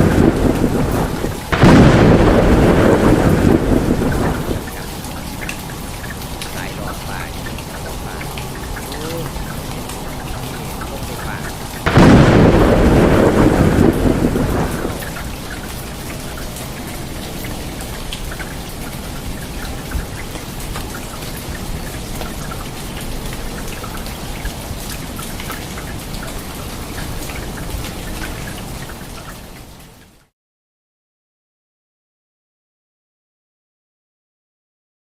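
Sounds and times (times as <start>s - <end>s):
thunder rumble: 0.0s - 28.8s
steady rain falling: 0.0s - 30.3s
water drips: 0.0s - 30.3s.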